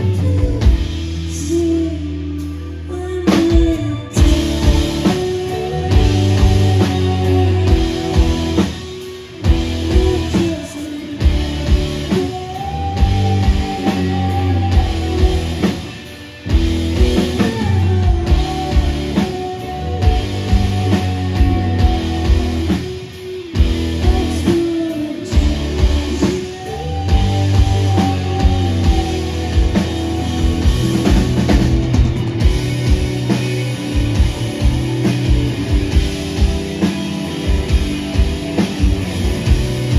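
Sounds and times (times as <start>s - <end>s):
person singing: 0.0s - 31.5s
bass guitar: 0.0s - 39.9s
drum kit: 0.0s - 39.9s
electric guitars: 0.0s - 39.9s.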